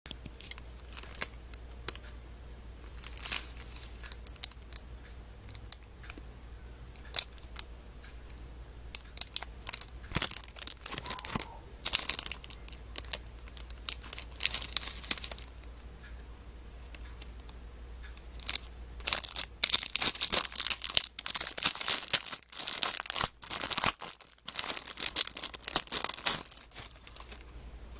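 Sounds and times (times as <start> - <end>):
plastic and card crinkling: 0.2 - 2.1, 2.9 - 4.8, 8.9 - 15.8, 18.3 - 27.6.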